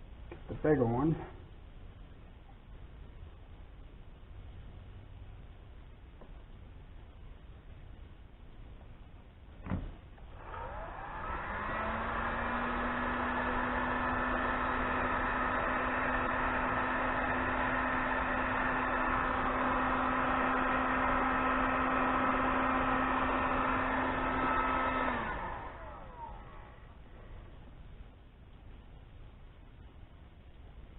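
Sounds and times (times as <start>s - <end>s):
heat gun fan whirring: 9.6s - 27.1s.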